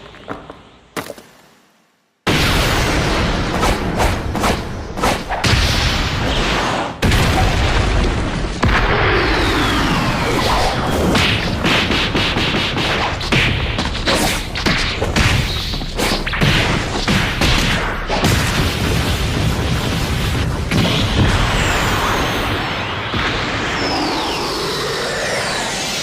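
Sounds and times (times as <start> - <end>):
booms and impacts: 2.3 - 24.4
falling whistle-like glide: 21.6 - 26.0.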